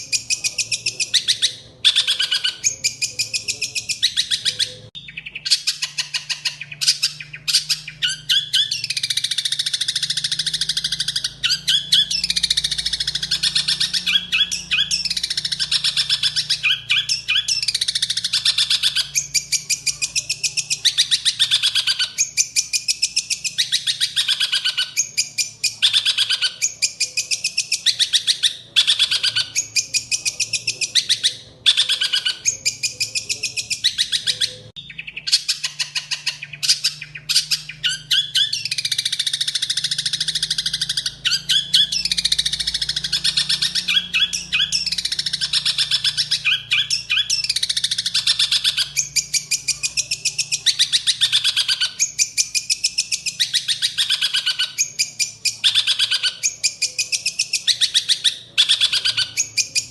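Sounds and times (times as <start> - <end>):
songbird singing: 0.0 - 59.9.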